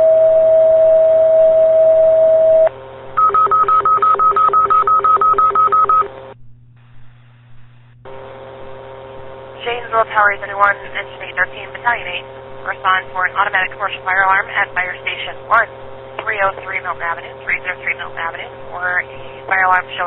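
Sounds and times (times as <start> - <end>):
long steady alert tone: 0.0 - 6.8
radio hiss: 6.2 - 20.0.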